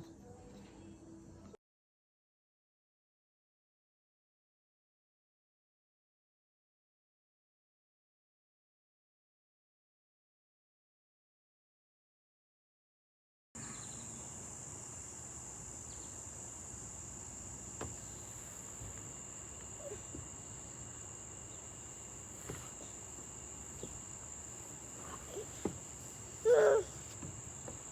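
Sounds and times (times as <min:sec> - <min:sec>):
insects chirring: 0:13.6 - 0:27.9.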